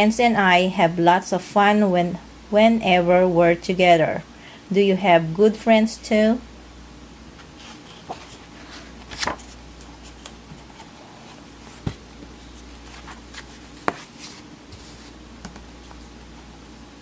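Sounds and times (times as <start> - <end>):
low room hum: 0.0 - 17.0
rustling: 7.4 - 16.7
light knocks of books: 11.8 - 12.3, 13.4 - 14.1.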